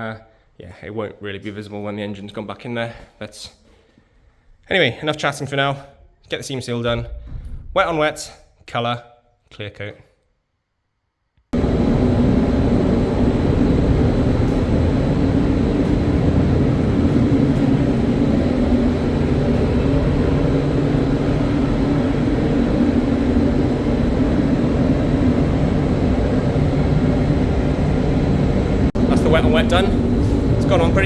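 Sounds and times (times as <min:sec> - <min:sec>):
spray booth fan drone: 0:11.6 - 0:31.0.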